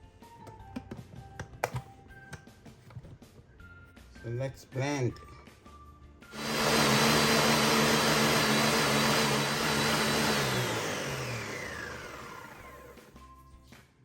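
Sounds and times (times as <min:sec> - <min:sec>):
kitchen blender running: 0:06.3 - 0:13.1.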